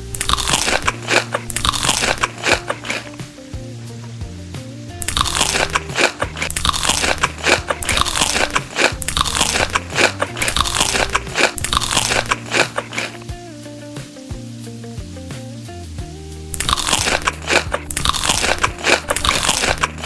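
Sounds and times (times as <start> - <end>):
person chewing crunchy food: 0.0 - 3.2, 5.0 - 13.2, 16.6 - 20.0.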